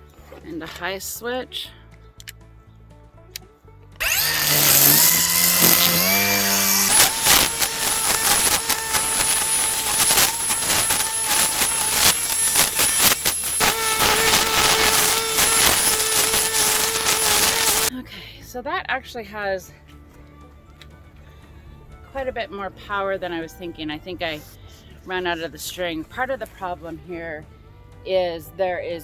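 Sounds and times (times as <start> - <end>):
string trimmer motor whine: 4.0 - 17.9.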